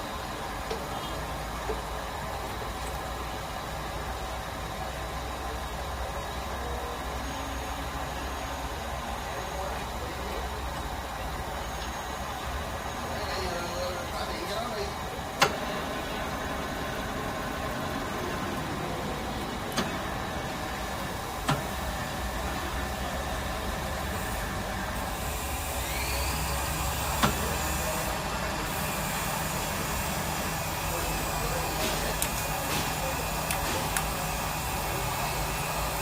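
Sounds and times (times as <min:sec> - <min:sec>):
milling machine motor hum: 0:14.0 - 0:36.0.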